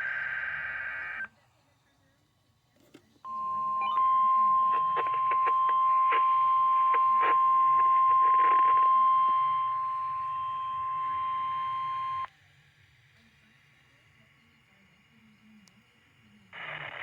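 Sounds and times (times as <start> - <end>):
faint radio hiss: 0.0 - 17.0
steady loud warning tone: 3.3 - 12.3.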